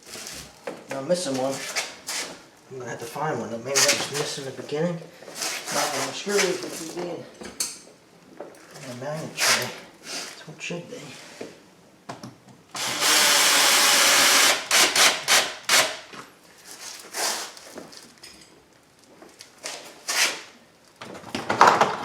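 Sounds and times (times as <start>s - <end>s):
cordless power tool running: 12.8s - 16.0s.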